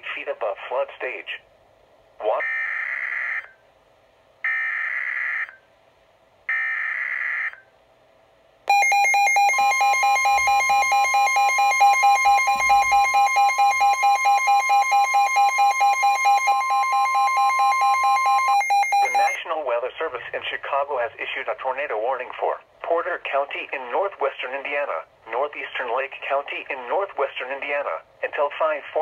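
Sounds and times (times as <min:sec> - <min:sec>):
steady warning alarm tone: 0:08.7 - 0:19.4
weather radio alarm beeping rapidly: 0:08.7 - 0:19.4.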